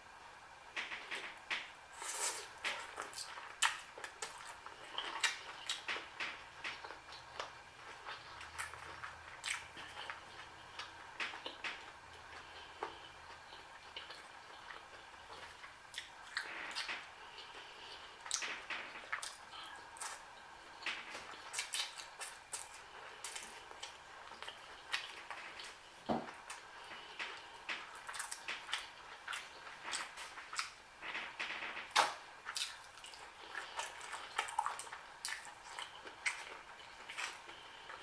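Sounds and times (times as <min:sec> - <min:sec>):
wet chewing and lip smacking: 0:02.0 - 0:30.8, 0:31.9 - 0:38.0.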